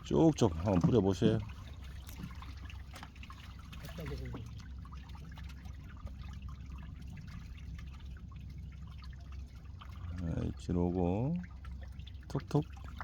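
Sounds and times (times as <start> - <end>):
water splashing and trickling: 0.0 - 13.0.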